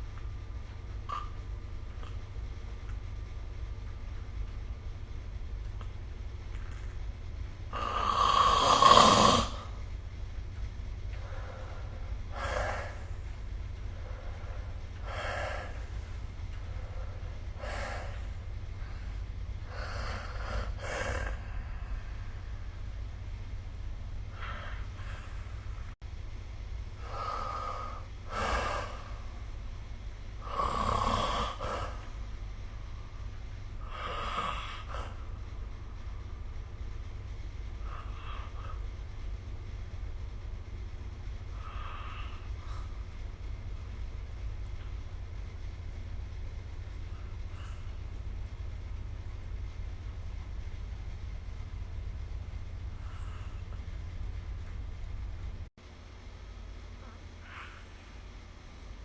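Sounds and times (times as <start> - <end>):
steady low hum: 0.0 - 59.0
person snoring: 7.7 - 9.8, 30.4 - 32.1
faint breath: 11.1 - 23.1, 24.3 - 26.0, 37.8 - 39.0, 41.5 - 43.1, 47.1 - 48.2, 52.8 - 54.1, 56.9 - 58.3.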